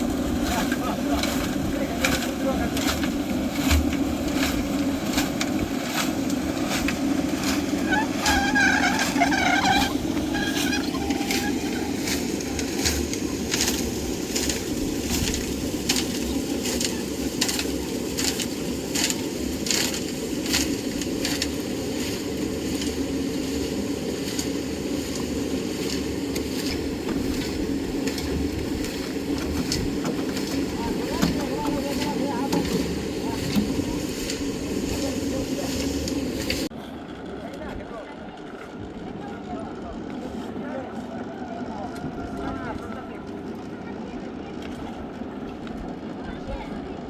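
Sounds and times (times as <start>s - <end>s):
knocks and scrapes of concrete work: 0.0s - 36.9s
engine running: 0.0s - 47.0s.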